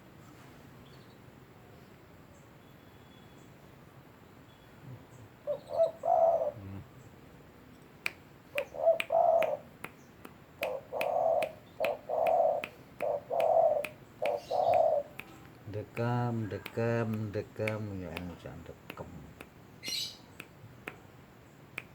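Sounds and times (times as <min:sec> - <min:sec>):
dove cooing: 0:04.9 - 0:06.9, 0:08.5 - 0:09.6, 0:10.6 - 0:15.2
sharp clicks: 0:08.1 - 0:21.0.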